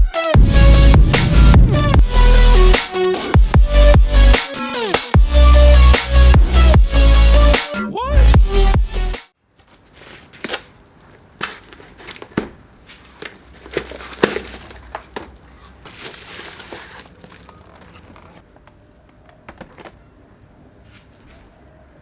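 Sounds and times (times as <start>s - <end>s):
crinkling: 9.5s - 20.2s.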